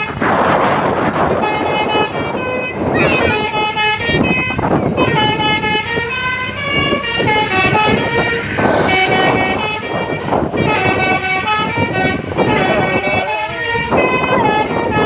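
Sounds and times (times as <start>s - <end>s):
multi-tone horn melody: 0.0s - 15.0s.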